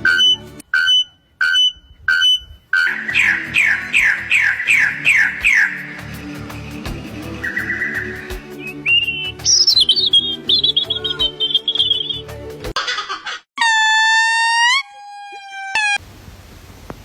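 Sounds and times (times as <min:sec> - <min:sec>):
background music: 0:00.0 - 0:00.6, 0:02.9 - 0:12.8
bird whistling and chirping: 0:00.0 - 0:06.0, 0:07.3 - 0:12.3.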